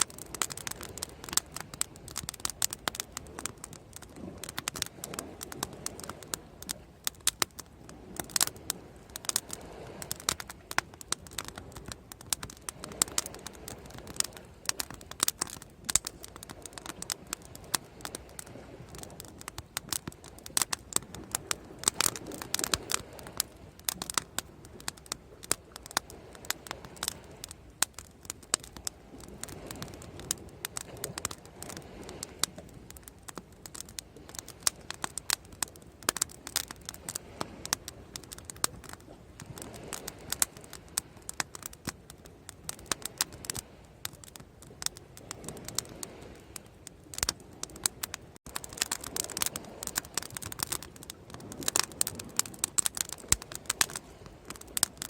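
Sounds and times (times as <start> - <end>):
bonfire crackling and popping: 0.0 - 55.0.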